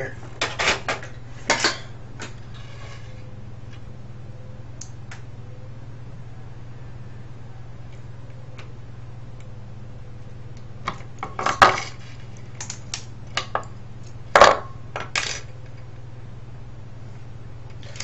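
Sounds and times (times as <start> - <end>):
low hum: 0.0 - 18.0
small parts clinking and clattering: 14.4 - 15.6.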